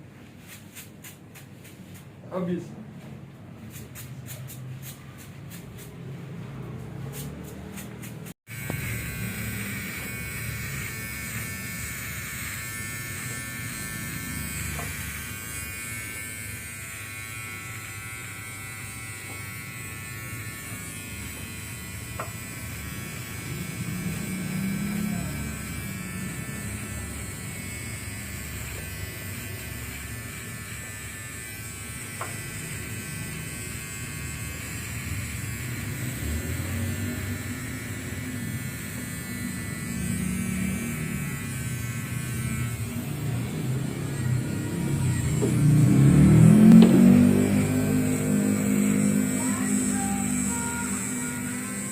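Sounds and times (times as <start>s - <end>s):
electric trimmer buzzing: 3.8s - 51.9s.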